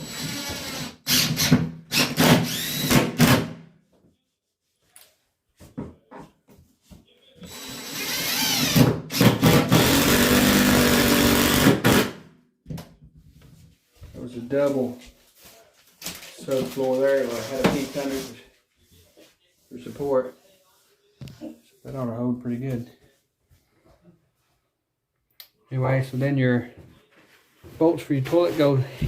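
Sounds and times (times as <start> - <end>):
power drill driving screws into wood: 0.0 - 3.5, 7.5 - 12.2.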